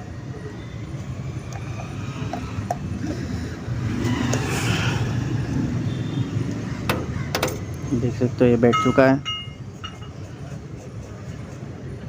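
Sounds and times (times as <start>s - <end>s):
low vehicle rumble: 0.0s - 8.6s.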